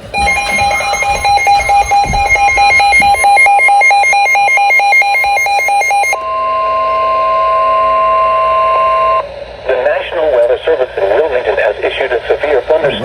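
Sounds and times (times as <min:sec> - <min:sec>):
electronic alert tone warbling: 0:00.0 - 0:09.2.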